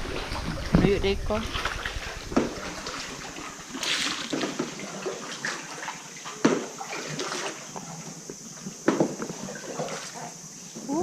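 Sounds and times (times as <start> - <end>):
kayak paddle splashing water: 0.0 - 10.8.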